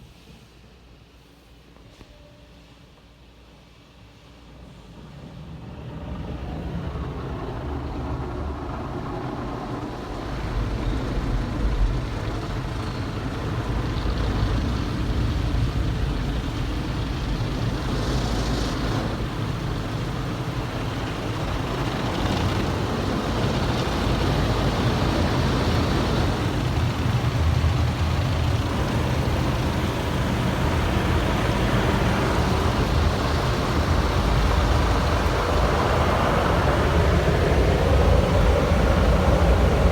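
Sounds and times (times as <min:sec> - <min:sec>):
deep rumble: 0:07.5 - 0:39.9
car wash water spray: 0:10.0 - 0:39.9.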